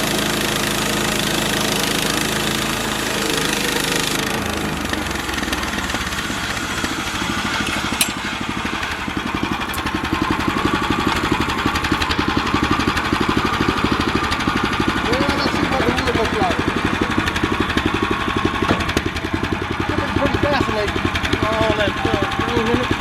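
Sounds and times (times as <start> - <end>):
small gasoline engine running: 0.0 - 23.0.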